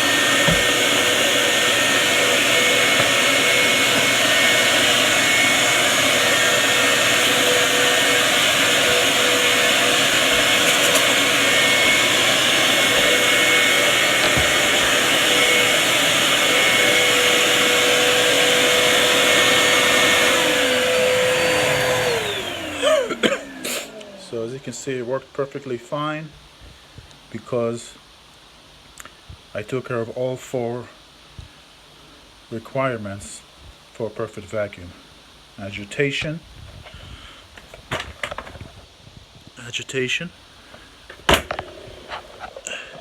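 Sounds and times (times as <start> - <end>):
vacuum motors spinning down: 0.0 - 24.4
vacuum cleaners running: 0.0 - 24.9, 41.2 - 43.0.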